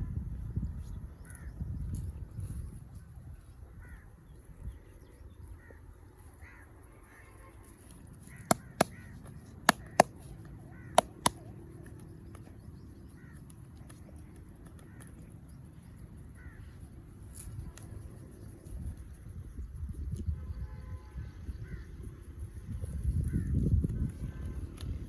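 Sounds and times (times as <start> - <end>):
crows cawing faintly: 1.2 - 1.5, 3.8 - 4.1, 5.6 - 7.5, 8.2 - 11.4, 13.1 - 13.5, 14.8 - 15.2, 16.3 - 16.8
sharp hand slaps: 8.5 - 9.0, 9.7 - 10.1, 11.0 - 11.4.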